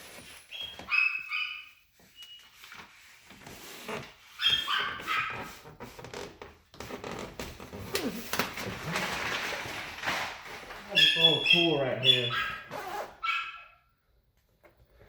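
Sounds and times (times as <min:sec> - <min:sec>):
dog whining and yelping: 0:04.4 - 0:05.5, 0:12.0 - 0:13.8.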